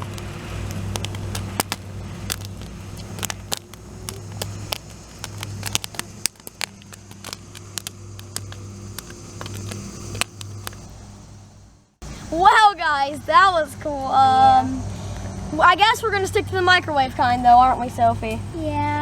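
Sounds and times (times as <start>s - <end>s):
popcorn popping: 0.0s - 11.0s
low steady hum: 0.0s - 16.0s.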